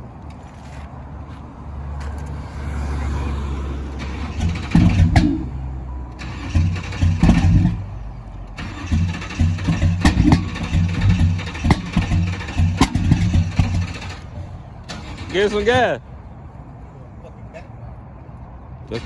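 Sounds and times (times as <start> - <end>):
engine cranking by starter: 3.9 - 16.0.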